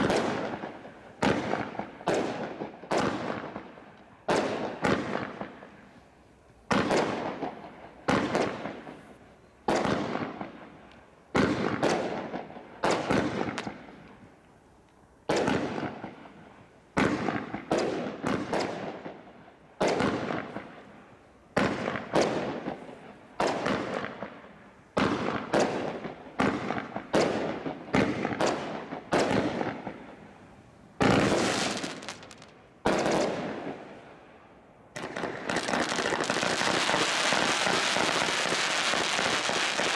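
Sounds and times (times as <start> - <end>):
firework bangs: 0.0 - 5.8, 6.7 - 14.2, 15.2 - 20.9, 21.5 - 30.4, 31.0 - 34.0, 34.9 - 39.9.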